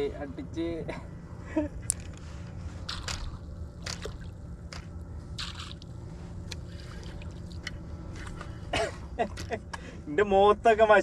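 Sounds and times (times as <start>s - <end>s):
steady low hum: 0.0s - 11.0s
wet water squirts and splashes: 5.4s - 5.8s.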